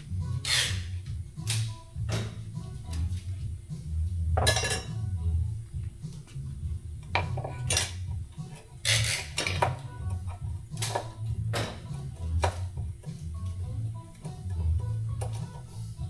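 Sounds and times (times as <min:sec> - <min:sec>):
steel tools striking metal: 0:07.2 - 0:09.8.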